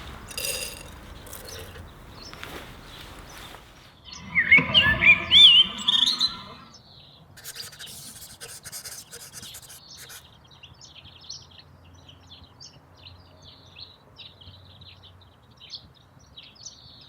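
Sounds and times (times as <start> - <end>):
high bird chirp: 1.0 - 6.7.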